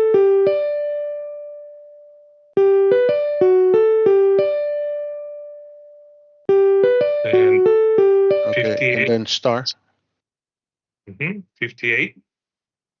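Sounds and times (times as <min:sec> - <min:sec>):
electronic keyboard melody: 0:00.0 - 0:09.3.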